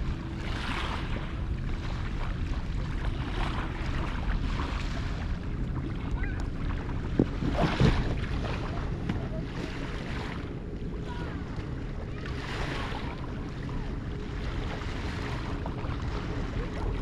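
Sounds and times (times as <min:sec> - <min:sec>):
wind rumble on microphone: 0:00.0 - 0:17.0.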